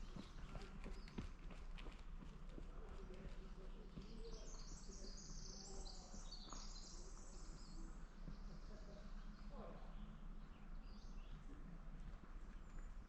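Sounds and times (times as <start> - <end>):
songbird singing: 3.1 - 11.6.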